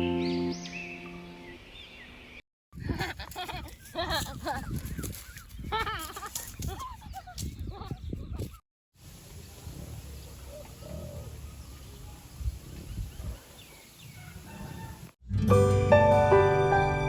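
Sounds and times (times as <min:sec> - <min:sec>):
birds calling: 0:03.4 - 0:08.6, 0:10.0 - 0:15.0.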